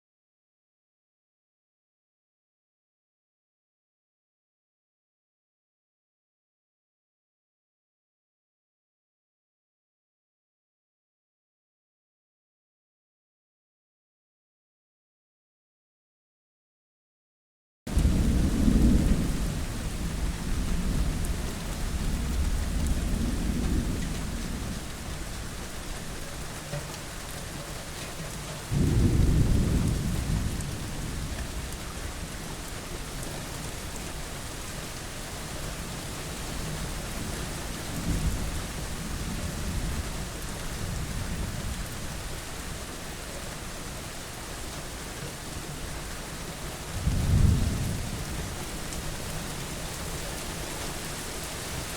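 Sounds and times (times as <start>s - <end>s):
thunder rolling: 17.9s - 25.9s, 28.6s - 32.3s, 47.0s - 48.6s
steady rain hiss: 17.9s - 51.9s.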